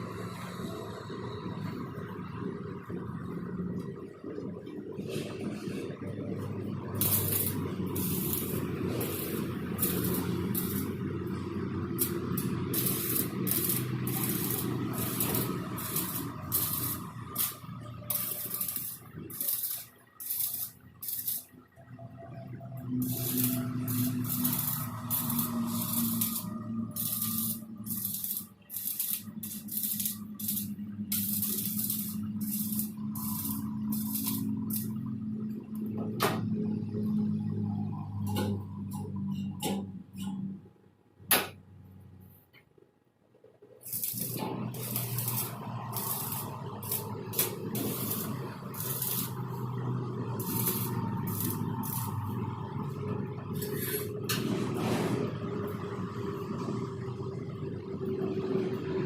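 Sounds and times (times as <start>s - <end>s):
steady low hum: 1.3s - 37.2s, 43.9s - 54.4s
arc welding hissing crackle: 6.4s - 21.6s, 22.9s - 35.5s, 43.8s - 54.4s.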